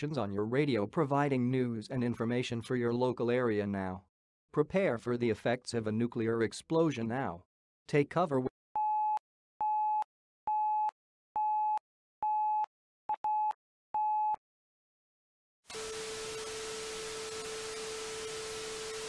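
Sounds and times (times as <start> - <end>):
loud static hiss: 16.0 - 19.0.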